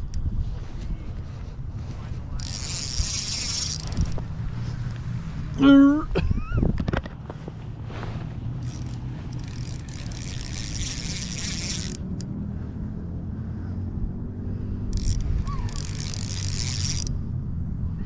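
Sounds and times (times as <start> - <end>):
fishing reel whirring: 2.3 - 4.2, 8.6 - 12.3, 14.8 - 17.1.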